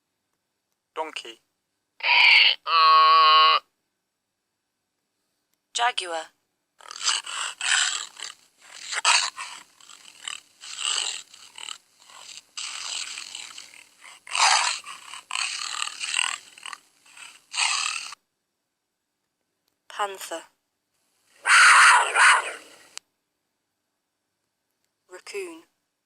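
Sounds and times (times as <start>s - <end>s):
jaguar roaring grunts: 6.8s - 18.2s, 21.4s - 22.9s.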